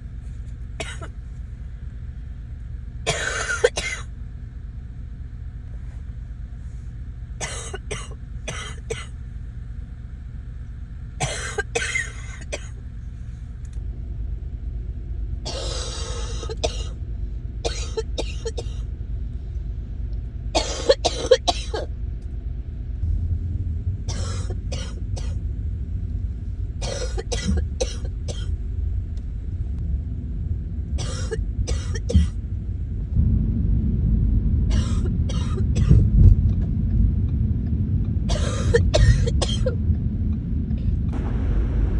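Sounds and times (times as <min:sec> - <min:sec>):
low rumble: 0:00.0 - 0:41.9
person coughing: 0:03.1 - 0:04.0, 0:07.4 - 0:09.1, 0:11.2 - 0:12.7, 0:15.5 - 0:16.9, 0:17.7 - 0:18.8, 0:20.6 - 0:21.9, 0:24.1 - 0:25.4, 0:31.0 - 0:32.4, 0:34.7 - 0:36.0, 0:38.3 - 0:39.8.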